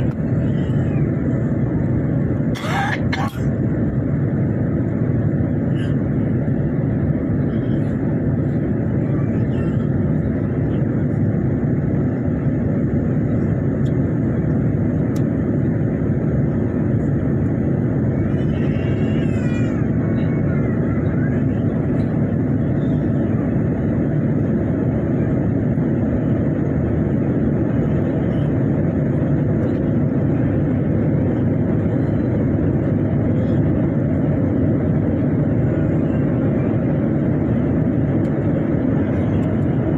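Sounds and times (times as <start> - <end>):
jet engines rumbling: 0.0 - 39.9.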